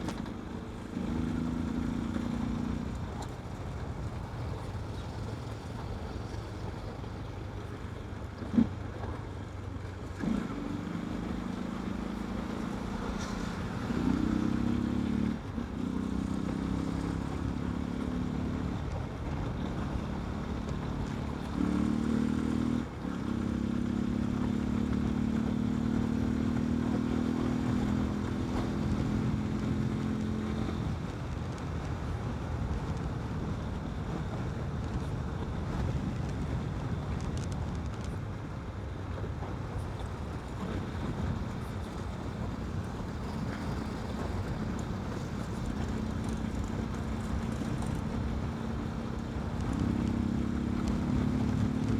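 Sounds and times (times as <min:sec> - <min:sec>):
motorcycle engine running: 0:00.0 - 0:09.1, 0:10.1 - 0:51.9
road and wind noise: 0:00.0 - 0:51.9.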